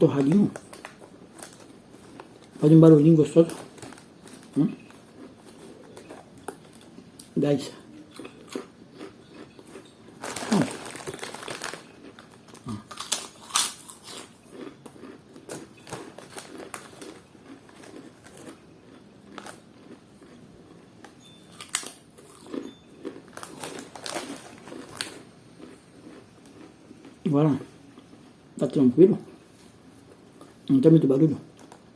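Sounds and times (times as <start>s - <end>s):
crinkling: 0.0s - 7.3s, 8.6s - 14.7s, 15.4s - 20.4s, 21.5s - 26.7s
crunchy chips being chewed: 3.3s - 7.3s, 8.1s - 28.4s.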